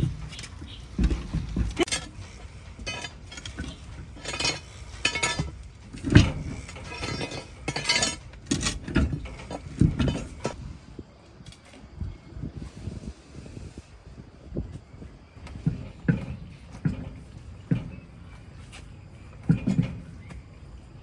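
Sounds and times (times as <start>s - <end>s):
metal clinking and clanking: 0.0s - 10.6s, 15.5s - 20.4s.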